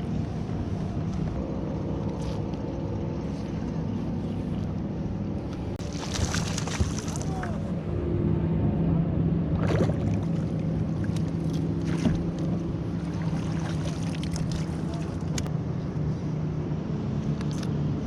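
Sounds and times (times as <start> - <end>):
boat motor humming: 0.0 - 18.0
water: 0.0 - 18.0
wind noise: 5.6 - 11.0.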